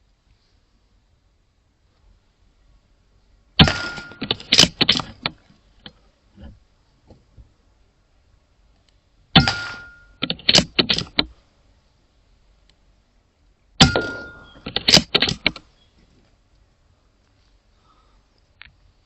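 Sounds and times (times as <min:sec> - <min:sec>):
air rifle shots: 0:03.6 - 0:05.3, 0:09.4 - 0:11.2, 0:13.8 - 0:15.6
sharp mechanical clicks: 0:03.6 - 0:06.0, 0:08.9 - 0:11.4, 0:13.8 - 0:15.7.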